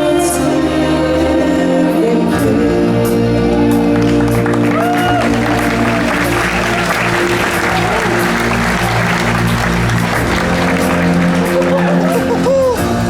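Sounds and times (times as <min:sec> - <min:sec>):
music with sustained notes: 0:00.0 - 0:13.0
audience applauding: 0:03.8 - 0:13.0.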